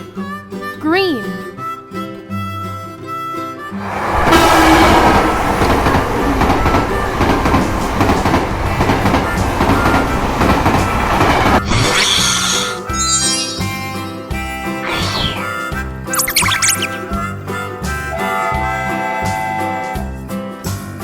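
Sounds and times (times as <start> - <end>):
train rumbling and clattering: 3.8 - 11.9.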